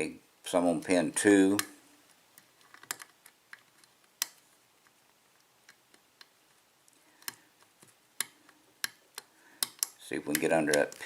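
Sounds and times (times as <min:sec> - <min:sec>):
lock pick metallic clicks: 0:08.2 - 0:11.0.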